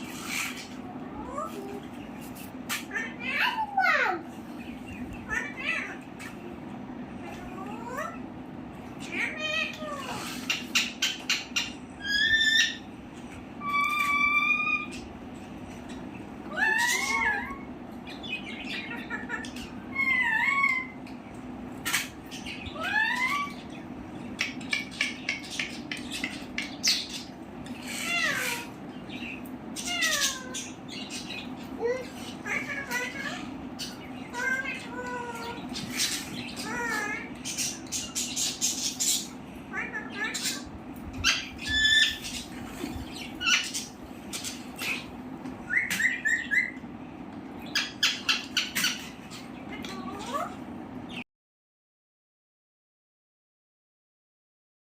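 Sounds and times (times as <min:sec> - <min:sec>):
parakeet calling: 0:00.0 - 0:01.6, 0:02.2 - 0:06.5, 0:08.9 - 0:51.2
parakeet clicks and chirps: 0:24.2 - 0:27.8.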